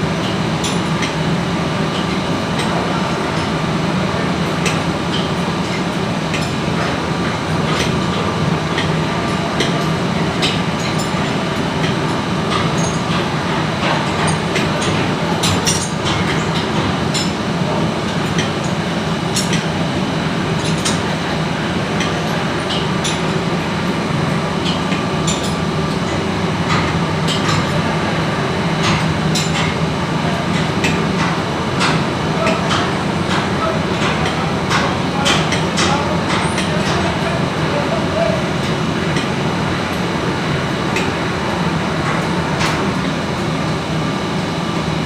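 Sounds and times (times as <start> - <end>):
machinery drone with low hum: 0.0 - 45.0.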